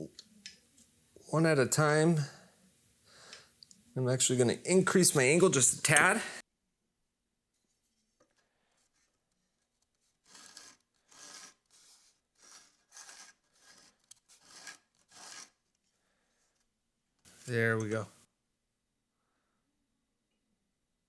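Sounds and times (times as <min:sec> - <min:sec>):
blade scratching on abrasive belt: 0:10.2 - 0:15.6.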